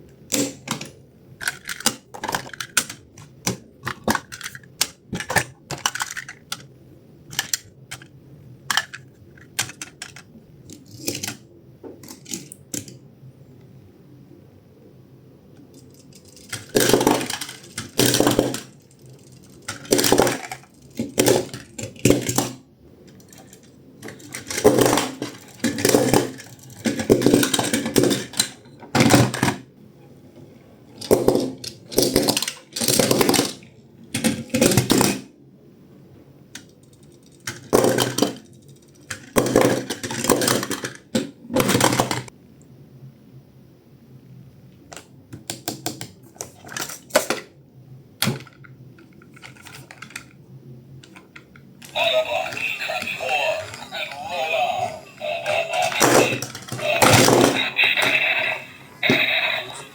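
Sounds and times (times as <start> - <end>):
toys clicking and clattering: 0.3 - 6.7, 7.3 - 13.0, 15.6 - 29.6, 31.0 - 35.3, 36.5 - 42.3, 45.0 - 47.5, 48.2 - 50.4, 51.0 - 59.9
toys rattling: 0.4 - 6.7, 7.3 - 12.9, 15.7 - 29.6, 31.0 - 35.2, 36.6 - 42.3, 48.3 - 50.4, 51.0 - 59.9.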